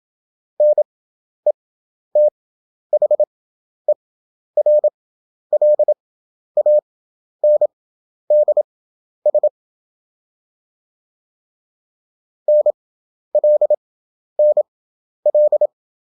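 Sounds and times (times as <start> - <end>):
morse code beeps: 0.6 - 0.9, 2.2 - 2.4, 3.0 - 3.3, 4.6 - 6.0, 6.6 - 6.8, 7.4 - 7.7, 8.3 - 8.6, 9.3 - 9.5, 12.5 - 12.8, 13.4 - 13.8, 14.4 - 14.7, 15.3 - 15.7.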